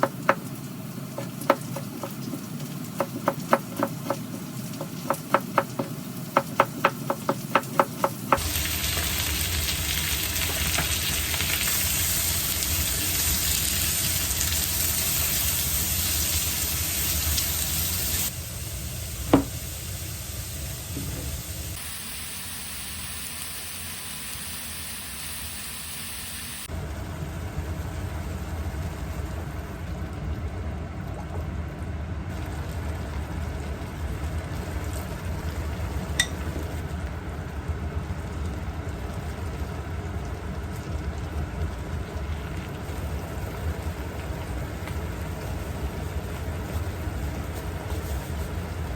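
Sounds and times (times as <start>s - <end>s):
food sizzling in a frying pan: 0.0s - 30.0s, 37.9s - 48.9s
knife chopping: 1.2s - 2.4s, 3.0s - 8.4s
pan clink: 36.2s - 36.4s.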